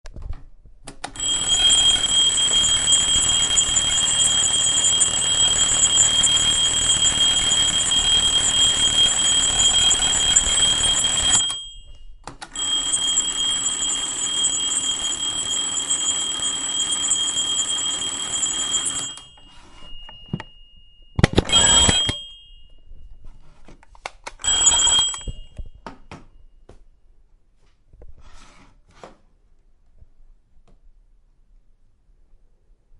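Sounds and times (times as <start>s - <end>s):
alarm clock ringing: 1.2s - 23.2s, 24.4s - 25.8s.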